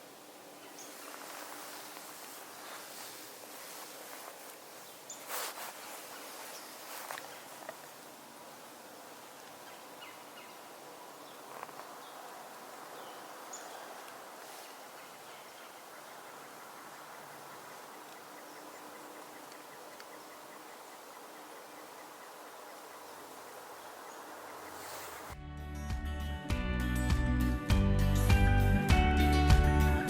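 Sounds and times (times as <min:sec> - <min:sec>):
low steady hiss: 0:00.0 - 0:25.4
bird chirps: 0:12.9 - 0:25.3.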